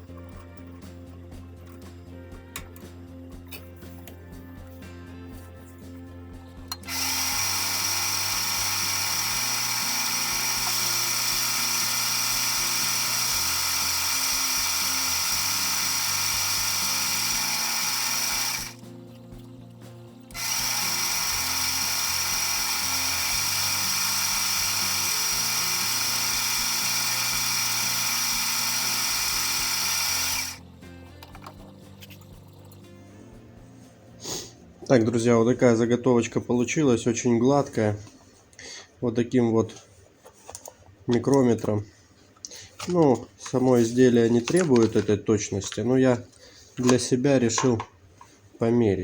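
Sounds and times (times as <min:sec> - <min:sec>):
quiet background music: 0:00.0 - 0:49.0
metal-cutting machine whine: 0:06.8 - 0:18.8, 0:20.3 - 0:30.6.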